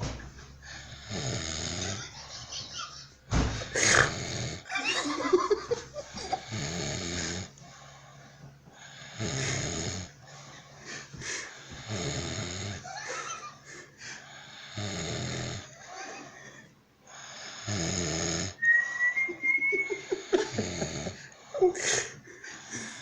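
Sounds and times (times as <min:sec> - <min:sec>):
heavy snoring: 0:00.6 - 0:02.1, 0:03.6 - 0:04.7, 0:06.0 - 0:07.9, 0:08.8 - 0:10.4, 0:11.4 - 0:12.9, 0:14.2 - 0:15.8, 0:17.1 - 0:18.6, 0:19.9 - 0:21.4
thin high whistle: 0:18.6 - 0:20.2.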